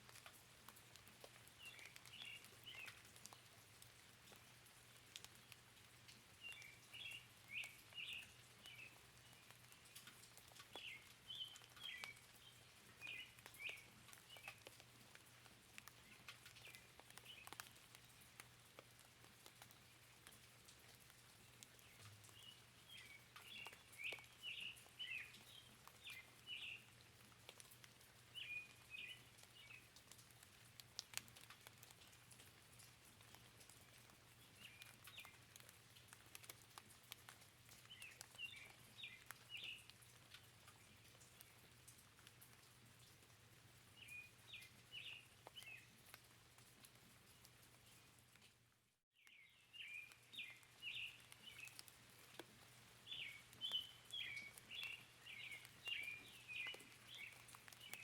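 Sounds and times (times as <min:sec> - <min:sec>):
faint rain: 0:00.0 - 0:58.0
raindrop ticks: 0:00.0 - 0:58.0
bird chirping: 0:49.2 - 0:51.9, 0:53.0 - 0:58.0.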